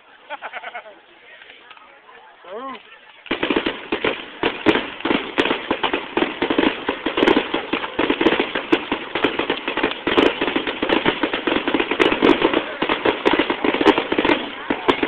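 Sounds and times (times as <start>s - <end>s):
fireworks crackling bangs: 3.2s - 15.0s.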